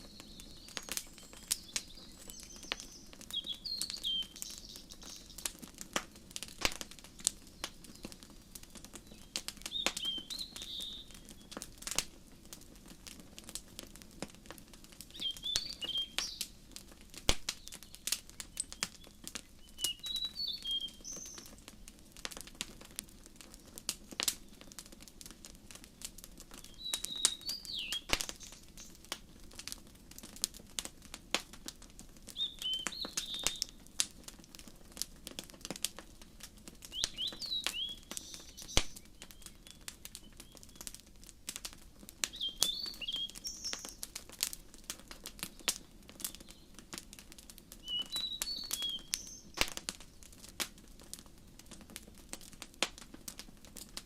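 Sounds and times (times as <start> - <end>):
songbird chirping: 0.0 - 6.3, 9.0 - 11.6, 15.1 - 16.6, 17.5 - 21.6, 26.6 - 29.0, 32.4 - 33.8, 36.9 - 40.9, 42.3 - 44.1, 47.8 - 49.7
wood fire crackling: 0.0 - 54.0.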